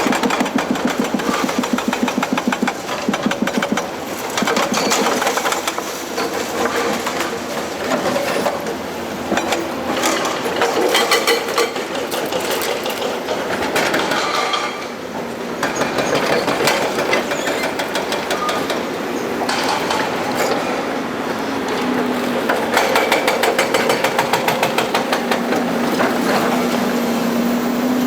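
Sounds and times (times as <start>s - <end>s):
excavator engine running: 0.0s - 5.8s.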